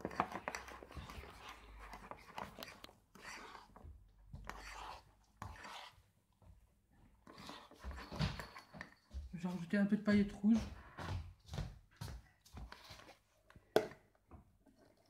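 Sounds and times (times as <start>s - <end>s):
slime rubbing and scraping: 0.0s - 6.0s, 7.3s - 8.2s.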